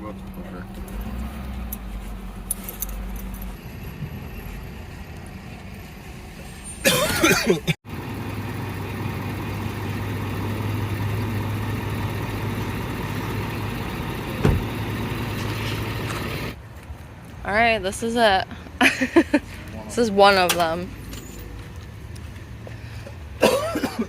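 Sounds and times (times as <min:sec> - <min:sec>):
vehicle engine droning: 0:00.0 - 0:16.6.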